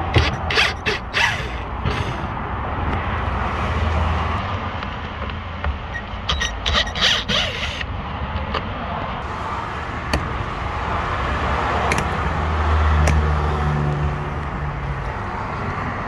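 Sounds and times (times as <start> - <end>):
screwdriver scraping on screws: 0.0 - 2.3, 5.9 - 7.9.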